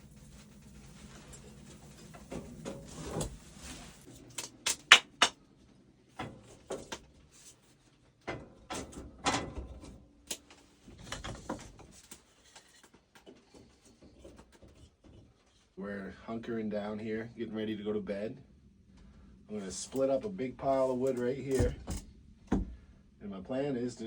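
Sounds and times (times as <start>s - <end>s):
sharp clacks: 4.7s - 5.4s.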